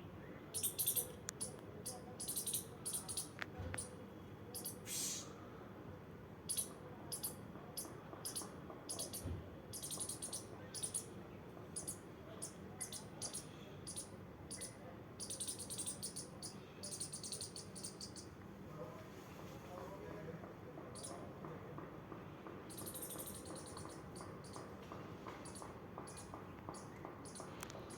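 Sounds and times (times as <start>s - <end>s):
squirrel squeaking: 0.5s - 5.3s, 6.5s - 18.4s, 20.9s - 21.3s, 22.6s - 24.8s, 25.4s - 27.9s.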